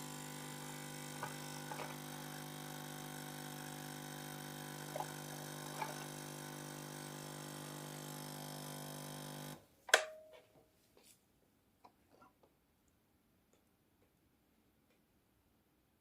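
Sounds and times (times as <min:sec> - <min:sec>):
coffee machine pump buzzing: 0:00.0 - 0:09.6.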